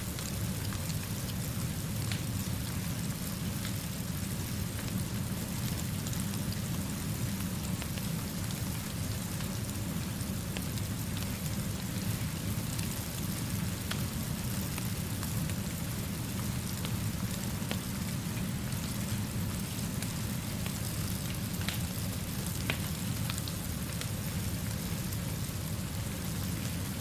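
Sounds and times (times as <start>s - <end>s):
steady rainfall hiss: 0.0s - 27.0s
raindrop ticks: 21.3s - 21.8s, 22.6s - 23.4s.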